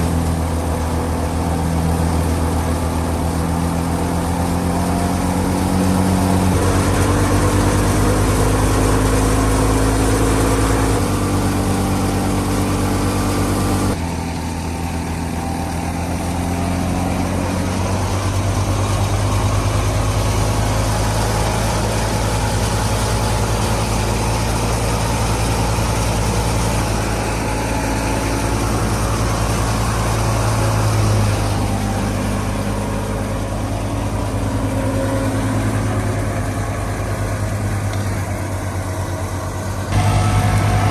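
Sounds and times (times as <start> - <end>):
diesel tractor engine running: 0.0 - 40.9.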